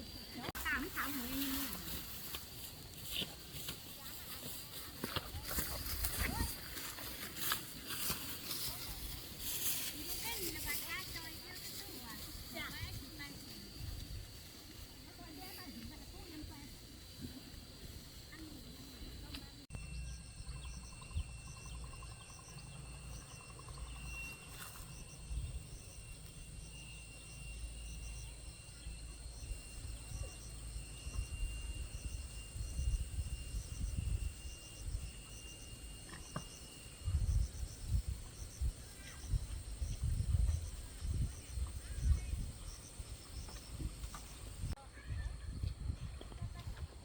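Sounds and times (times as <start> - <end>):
insects chirping: 0.0 - 47.0.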